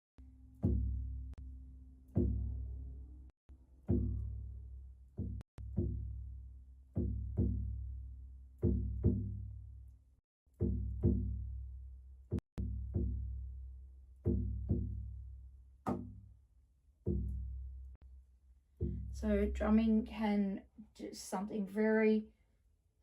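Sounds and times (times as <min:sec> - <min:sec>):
hand drum beaten slowly: 0:18.8 - 0:19.2.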